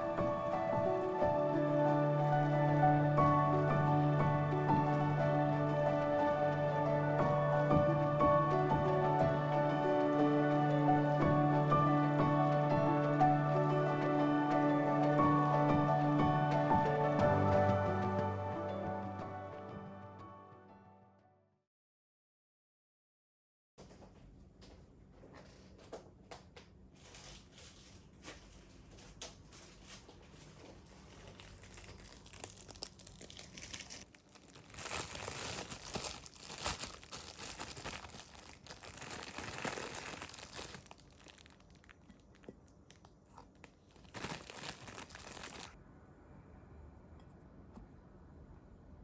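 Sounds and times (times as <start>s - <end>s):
close crinkling and rustling: 23.8s - 45.8s.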